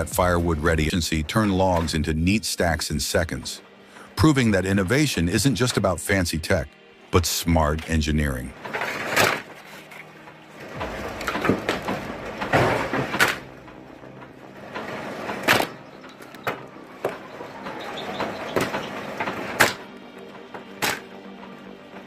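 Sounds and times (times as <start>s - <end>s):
firewood knocks and cracks: 10.7s - 14.3s, 20.6s - 21.2s.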